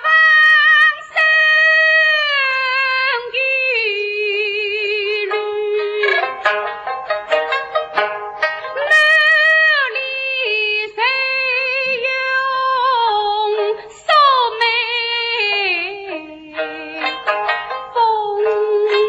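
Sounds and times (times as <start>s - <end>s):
high voice singing with vibrato: 0.0s - 6.5s, 8.7s - 19.0s
plucked strings: 4.9s - 11.0s, 13.0s - 19.0s.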